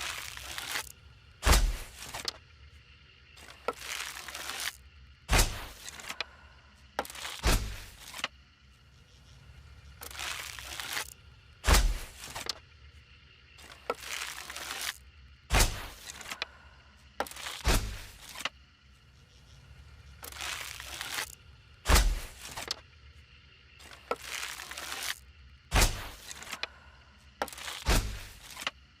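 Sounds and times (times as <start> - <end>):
bow shot cracks: 1.4 - 2.0, 5.3 - 5.8, 11.6 - 12.1, 15.5 - 16.0, 21.9 - 22.4, 25.7 - 26.2.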